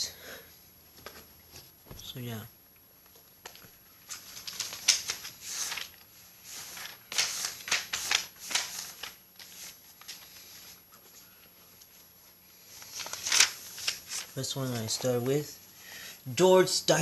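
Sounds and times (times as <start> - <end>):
paper sheets rustling: 3.4 - 15.6.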